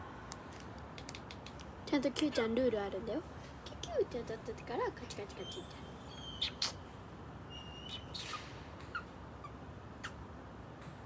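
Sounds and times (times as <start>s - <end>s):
bird soft clicks: 0.3s - 1.7s
bird whistled chirps: 5.4s - 6.8s, 7.5s - 9.1s.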